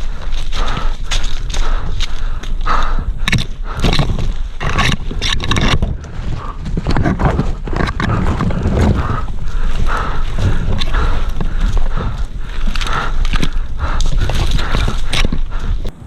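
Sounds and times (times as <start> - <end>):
footsteps on rough ground: 0.0 - 16.0
heavy low rumble: 0.0 - 16.0.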